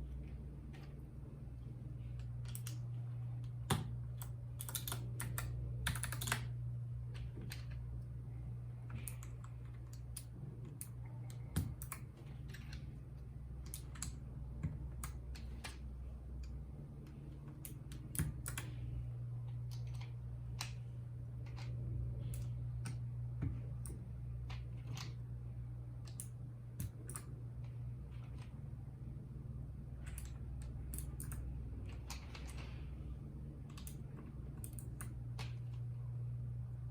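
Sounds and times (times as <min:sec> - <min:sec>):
low hum: 0:00.0 - 0:36.9
mechanical keyboard key clicks: 0:03.7 - 0:06.5, 0:17.5 - 0:18.7.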